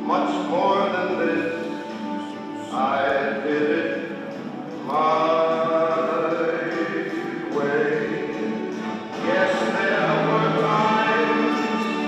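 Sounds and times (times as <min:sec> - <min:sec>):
choir singing: 0:05.2 - 0:12.0.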